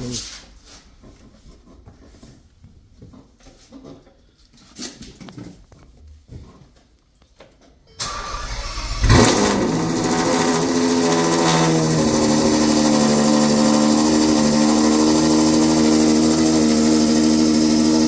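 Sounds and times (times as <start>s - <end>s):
car engine revving and idling: 8.0s - 18.0s
engine starter cranking: 8.0s - 18.0s.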